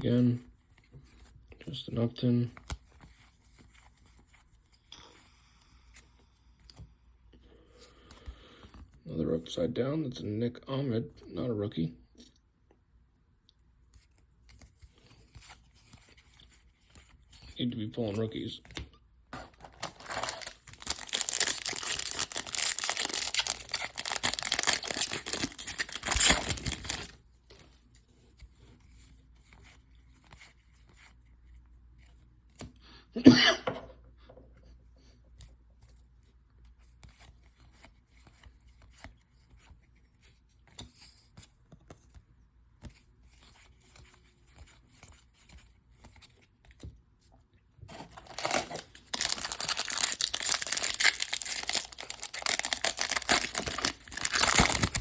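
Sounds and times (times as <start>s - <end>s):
foil wrapper tearing and crinkling: 19.6s - 27.2s, 47.9s - 55.0s.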